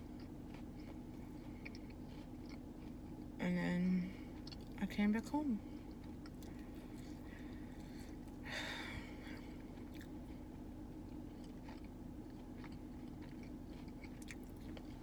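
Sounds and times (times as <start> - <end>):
person chewing food: 0.0 - 3.4, 4.1 - 4.8, 5.6 - 15.0
steady low hum: 0.0 - 15.0.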